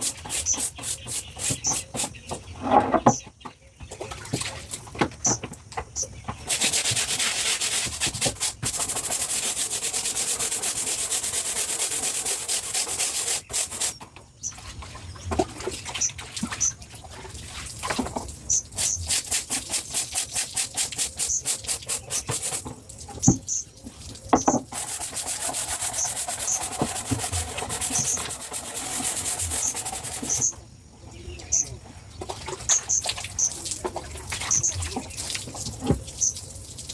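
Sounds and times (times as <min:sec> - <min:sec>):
stiff brush scrubbing: 0:00.0 - 0:02.2, 0:06.4 - 0:14.0, 0:18.7 - 0:22.7, 0:24.7 - 0:30.5
small birds chirping: 0:00.0 - 0:09.3, 0:12.6 - 0:16.8, 0:18.1 - 0:36.8.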